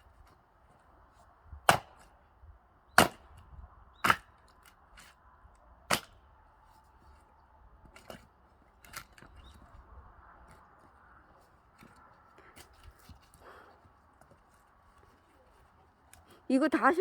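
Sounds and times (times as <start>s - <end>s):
splitting tool striking logs: 1.6s - 2.1s, 2.9s - 3.4s, 4.0s - 5.1s, 5.9s - 6.2s.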